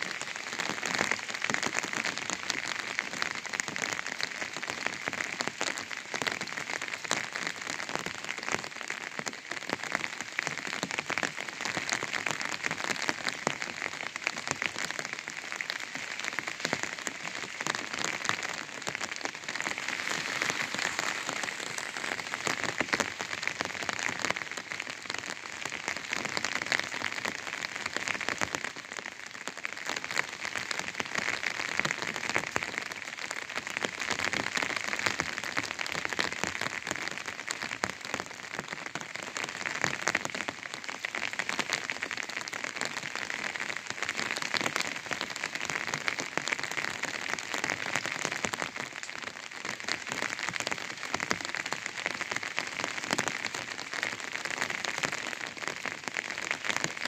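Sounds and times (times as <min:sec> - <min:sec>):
rain on an umbrella: 0:00.0 - 0:57.0.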